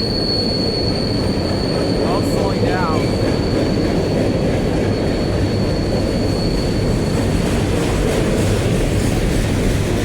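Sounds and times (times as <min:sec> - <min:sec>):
freight train rumbling past: 0:00.0 - 0:10.0
high-pitched train squeal: 0:00.0 - 0:10.0.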